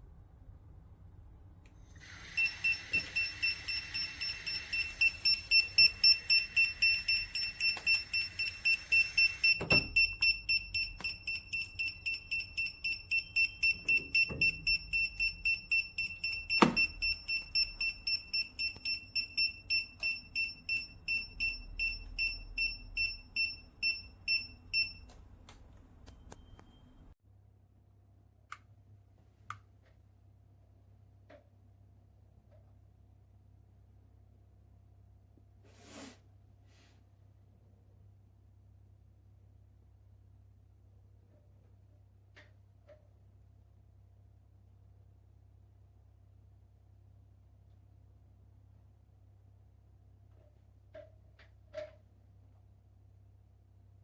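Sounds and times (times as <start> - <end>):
hiss: 2.0 - 9.6
high-pitched alarm beeping: 2.1 - 25.0.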